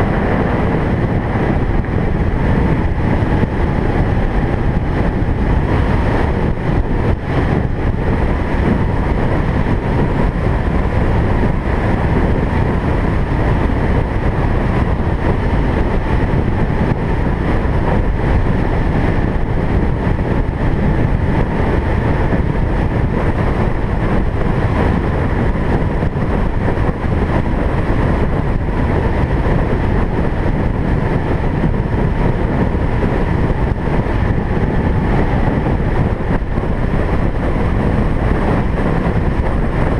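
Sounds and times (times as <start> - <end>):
car engine and road noise: 0.0 - 39.9.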